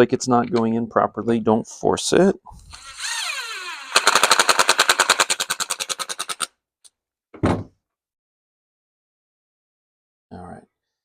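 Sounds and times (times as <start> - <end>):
impact driver whining and hammering: 2.6 - 5.6.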